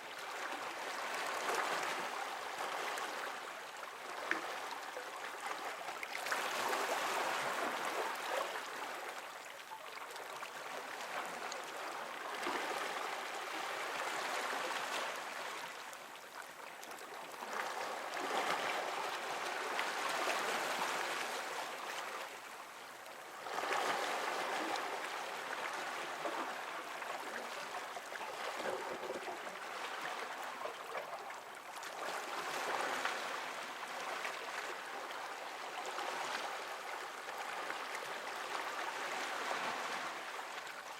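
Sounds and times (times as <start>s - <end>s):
water lapping against rocks: 28.0s - 32.8s.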